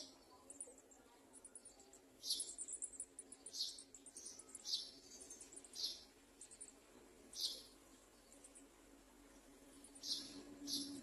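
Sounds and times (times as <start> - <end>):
sharp bird calls: 2.2 - 8.7, 9.9 - 11.0.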